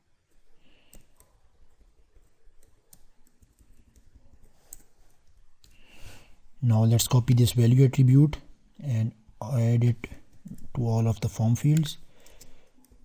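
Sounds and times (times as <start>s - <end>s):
computer keyboard keystrokes: 0.3s - 5.8s.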